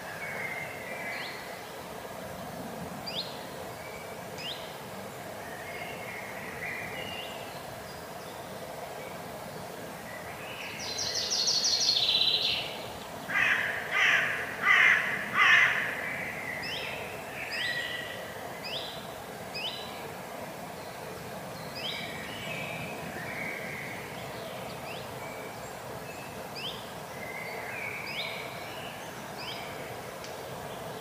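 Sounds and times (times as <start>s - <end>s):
raven harsh calls: 13.3s - 16.3s.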